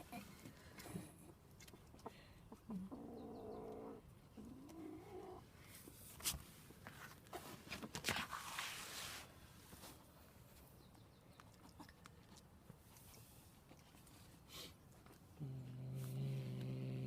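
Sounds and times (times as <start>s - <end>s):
rustling and clicking handling noises: 5.6s - 9.0s.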